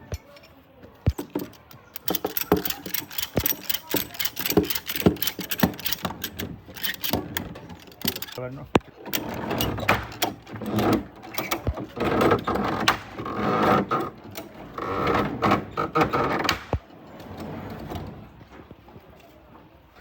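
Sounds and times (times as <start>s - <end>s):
dense background noise: 0.0s - 20.0s
sharp knocks and clatter: 1.0s - 17.0s.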